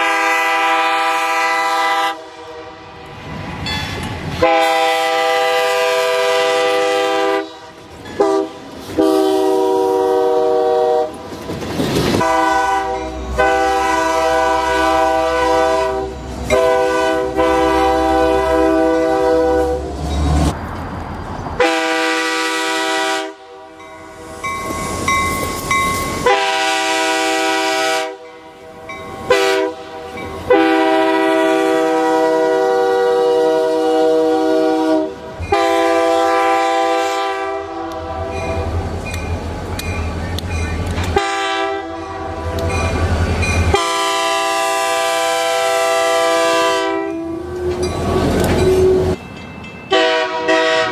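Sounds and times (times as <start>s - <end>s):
locomotive air horn blasts: 0.0s - 3.0s, 4.4s - 11.2s, 12.2s - 20.0s, 21.6s - 23.8s, 26.2s - 38.6s, 41.1s - 42.8s, 43.7s - 49.2s, 49.9s - 50.9s
passing train rumble: 0.0s - 50.9s.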